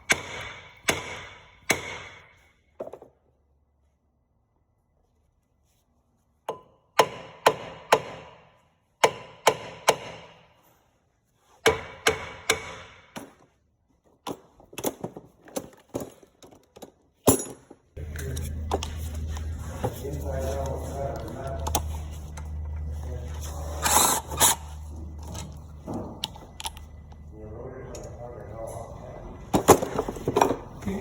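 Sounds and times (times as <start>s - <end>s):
steady low hum: 18.0s - 31.0s.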